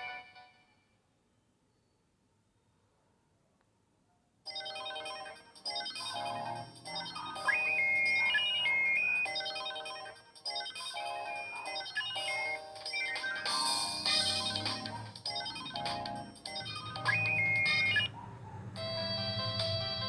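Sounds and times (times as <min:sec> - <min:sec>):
synthesized phone ringtone melody: 0:00.0 - 0:00.7, 0:04.5 - 0:18.2, 0:18.8 - 0:20.0.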